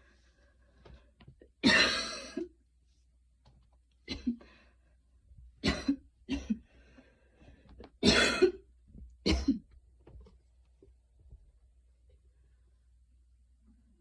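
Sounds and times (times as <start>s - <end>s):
woman coughing: 1.6s - 2.5s, 5.6s - 6.6s, 8.0s - 8.6s, 9.3s - 9.6s.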